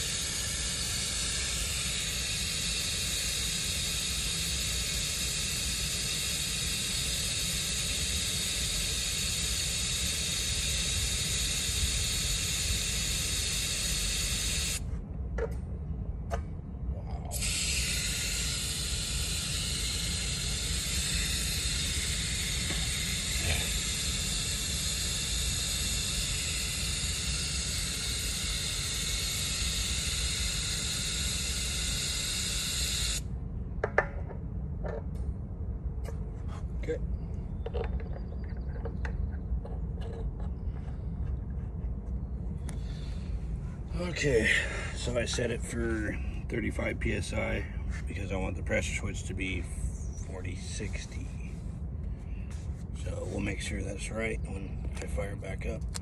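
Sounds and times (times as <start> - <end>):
compressed air hissing: 0.0 - 14.8, 17.3 - 33.2, 42.6 - 45.4
valve clicks: 0.0 - 14.8, 17.3 - 33.2.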